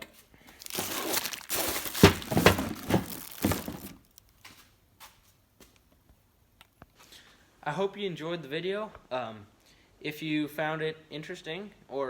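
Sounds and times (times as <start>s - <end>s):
packaging rustling and crinkling: 0.5s - 4.4s
knocks of parts set down: 0.8s - 4.0s.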